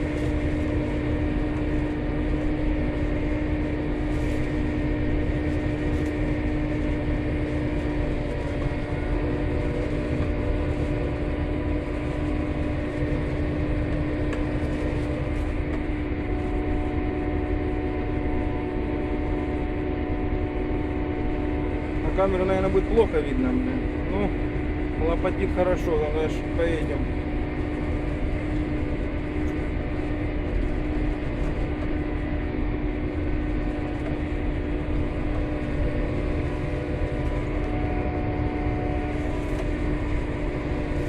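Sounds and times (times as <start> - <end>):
road drone: 0.0 - 41.0
vehicle engine hum: 0.0 - 41.0.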